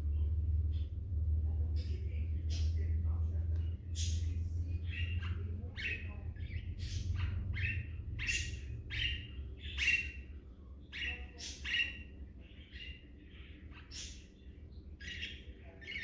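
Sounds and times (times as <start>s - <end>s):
steady low hum: 0.0s - 16.0s
parakeet chirping: 3.6s - 16.0s.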